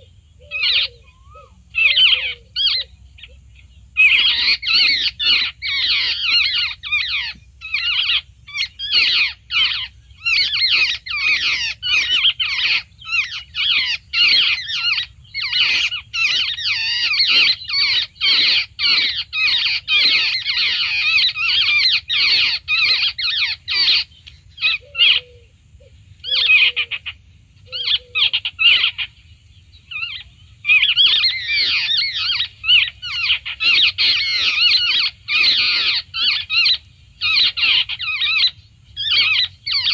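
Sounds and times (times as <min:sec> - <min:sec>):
babblers chattering: 0:00.0 - 0:25.4.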